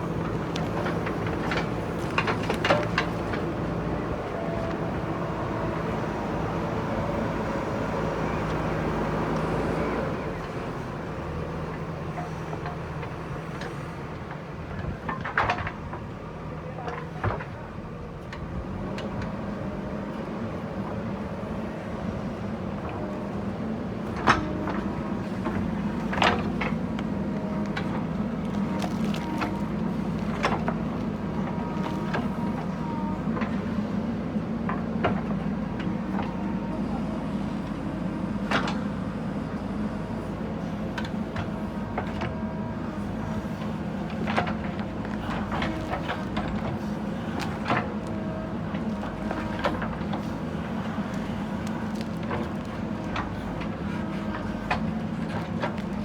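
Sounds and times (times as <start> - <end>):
diesel engine running: 17.8 - 56.0.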